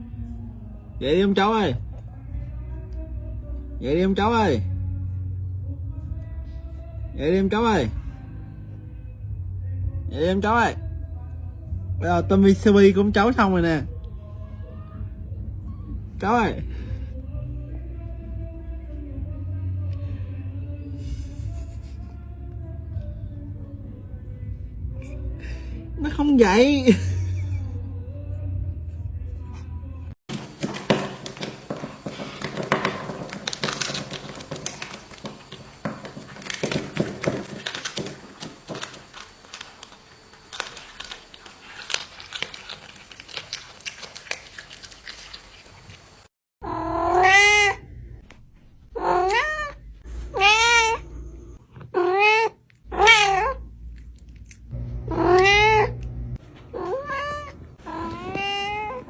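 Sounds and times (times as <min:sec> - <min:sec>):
clicks and rustling: 0:30.3 - 0:44.2
cat meowing: 0:46.6 - 0:47.8, 0:49.0 - 0:51.1, 0:52.0 - 0:53.6, 0:55.1 - 0:56.0, 0:56.7 - 0:59.0.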